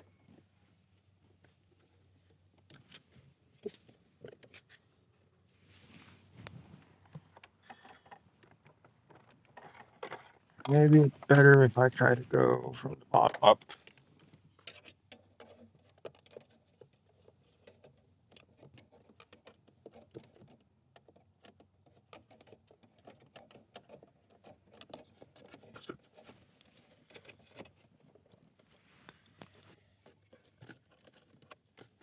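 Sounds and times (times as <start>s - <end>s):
light rustling of hands: 0.9s - 8.2s.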